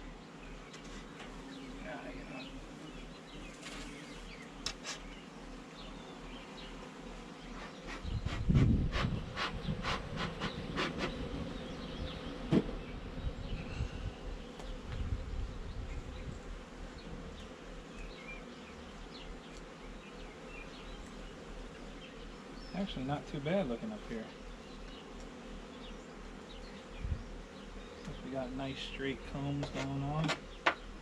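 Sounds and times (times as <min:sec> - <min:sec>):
honey bees buzzing: 0:00.0 - 0:31.0
dull low thump: 0:12.5 - 0:12.8.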